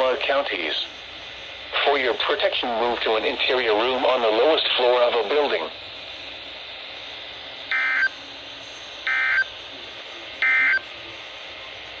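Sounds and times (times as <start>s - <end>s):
radio hiss: 0.0s - 12.0s
digital data tone bursts: 7.7s - 8.2s, 9.1s - 9.5s, 10.4s - 10.9s.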